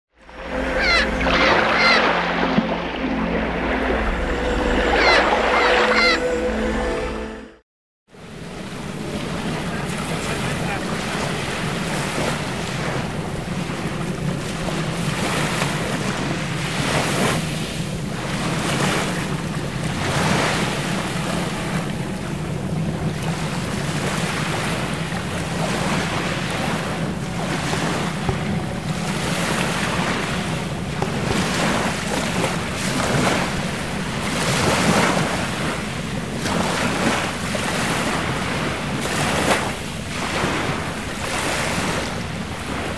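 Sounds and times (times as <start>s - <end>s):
boat motor running: 0.1s - 7.4s, 8.3s - 42.9s.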